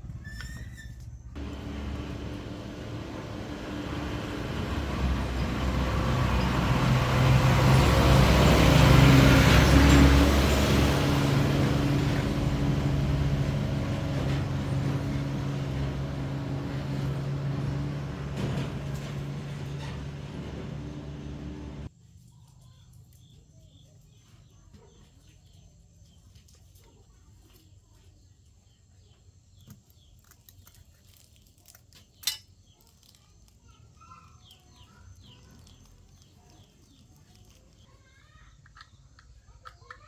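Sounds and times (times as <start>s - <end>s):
heavy vehicle engine passing: 1.4s - 21.9s.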